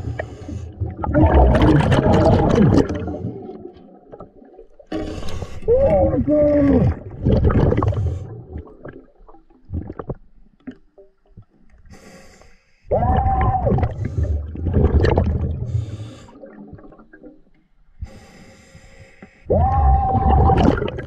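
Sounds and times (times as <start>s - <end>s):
gurgling bubbling exhales: 0.0s - 3.7s, 4.9s - 10.2s, 12.9s - 17.1s, 19.5s - 21.0s
hissing snorkel inhales: 11.9s - 12.8s, 15.7s - 16.4s, 18.0s - 19.5s.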